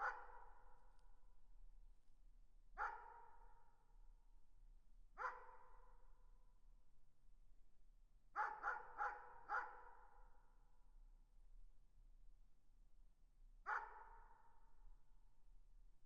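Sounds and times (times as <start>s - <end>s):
distant dog barking: 0.0s - 0.4s, 2.8s - 3.2s, 5.2s - 5.6s, 8.4s - 10.0s, 13.7s - 14.2s.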